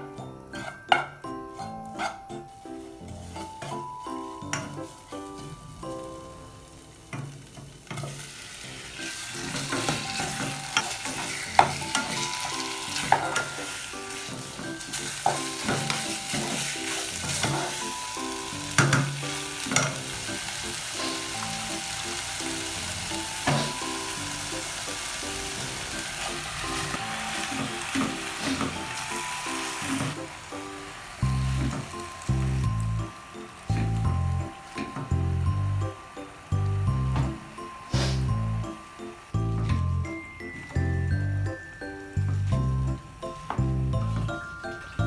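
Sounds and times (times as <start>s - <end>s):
food sizzling in a pan: 0.4s - 45.0s
utensil knocking and scraping pan: 0.6s - 1.2s, 1.9s - 2.4s, 3.0s - 5.0s, 14.2s - 17.8s.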